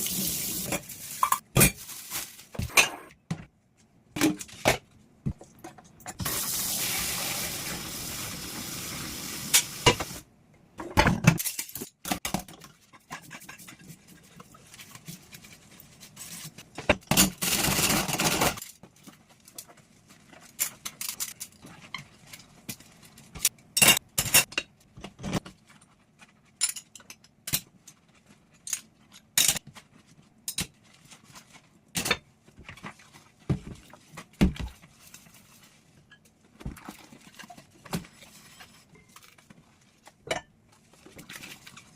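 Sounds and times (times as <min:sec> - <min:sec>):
tap water running: 0:00.0 - 0:01.4, 0:06.2 - 0:10.2.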